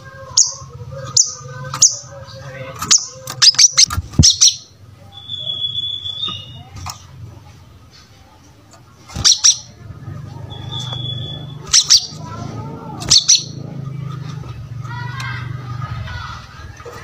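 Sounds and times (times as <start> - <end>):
thin bird whistle: 3.4 - 6.7, 10.5 - 12.1
bird double chirps: 10.5 - 12.2.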